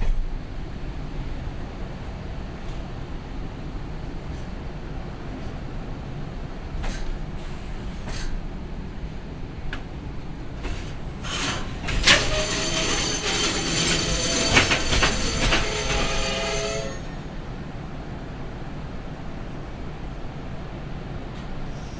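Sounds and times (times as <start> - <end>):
low train rumble: 0.0 - 21.9
train brakes squealing: 10.4 - 17.9
metallic clanks: 10.5 - 17.2.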